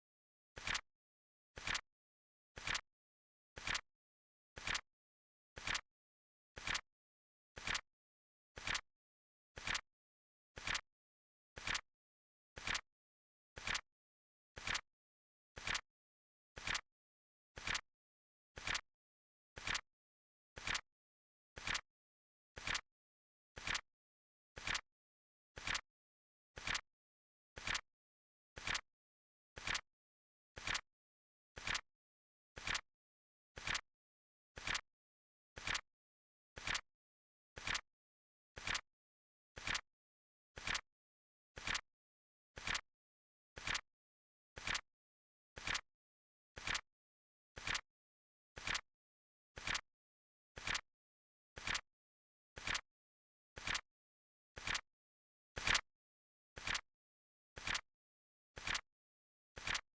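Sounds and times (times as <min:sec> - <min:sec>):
clock timer ticking: 0:34.6 - 0:34.8, 0:35.6 - 0:35.8, 0:36.6 - 0:36.8, 0:37.6 - 0:37.8, 0:38.6 - 0:38.8, 0:42.6 - 0:42.8, 0:43.6 - 0:43.8, 0:44.6 - 0:44.8, 0:46.6 - 0:46.8, 0:47.6 - 0:47.8, 0:48.6 - 0:48.8, 0:49.6 - 0:49.8, 0:50.6 - 0:50.8, 0:53.6 - 0:53.8, 0:54.6 - 0:54.8, 0:56.6 - 0:56.8, 0:57.6 - 0:57.8, 0:58.6 - 0:58.8, 0:59.6 - 0:59.8.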